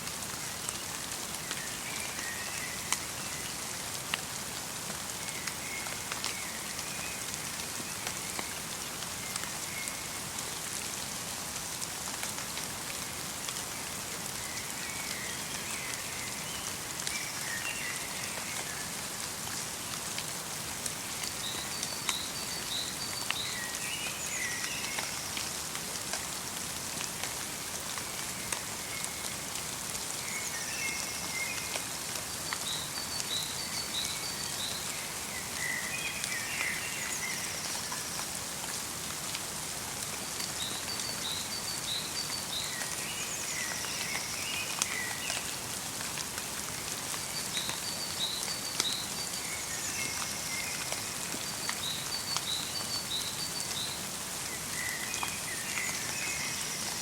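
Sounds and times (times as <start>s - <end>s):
light rain falling: 0.0s - 57.0s
songbirds chirping: 46.8s - 57.0s.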